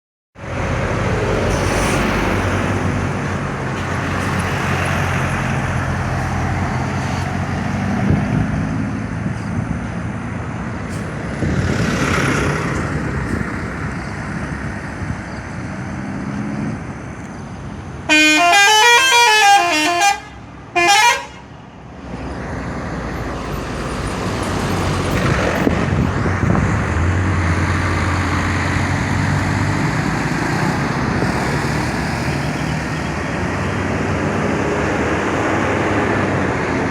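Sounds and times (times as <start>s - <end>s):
road traffic noise: 0.4s - 36.9s
short horn blast: 18.1s - 21.4s
musical bus horn tune: 18.1s - 21.6s.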